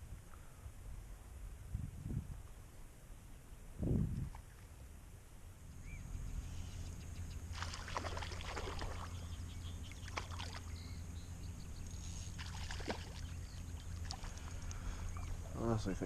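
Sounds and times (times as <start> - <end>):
steady low rumble: 0.0 - 16.0
water sloshing and splashing: 7.5 - 9.3, 9.9 - 10.8, 12.3 - 15.4.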